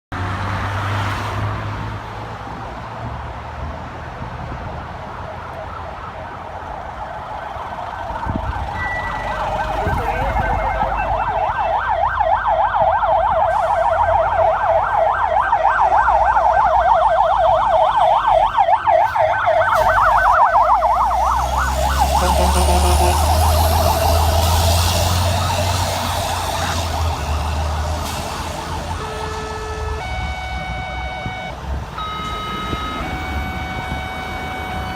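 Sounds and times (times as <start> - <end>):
electronic siren yelp: 8.2 - 34.9.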